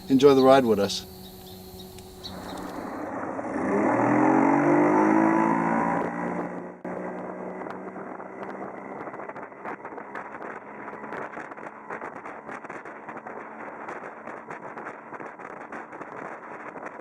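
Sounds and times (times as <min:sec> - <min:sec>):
outboard motor running: 0:00.0 - 0:03.4
loud engine sound: 0:00.0 - 0:13.8
wind buffeting microphone: 0:00.0 - 0:17.0.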